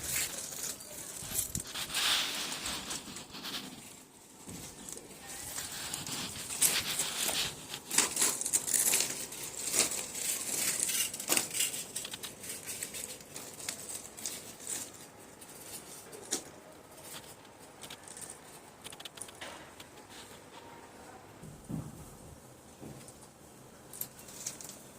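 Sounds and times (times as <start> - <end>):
plastic pipe rustling and scraping: 0.0 - 20.8.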